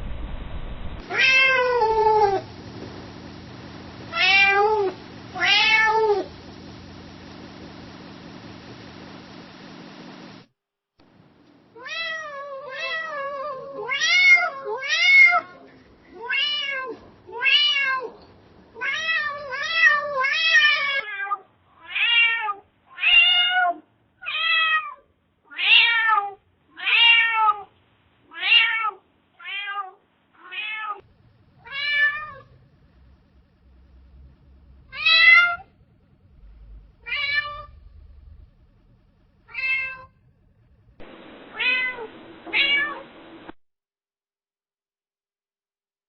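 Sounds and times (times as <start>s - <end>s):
cat meowing: 1.0s - 2.5s, 4.1s - 6.3s, 18.8s - 27.7s, 28.3s - 31.0s, 31.6s - 32.5s, 39.5s - 40.2s, 41.5s - 43.0s.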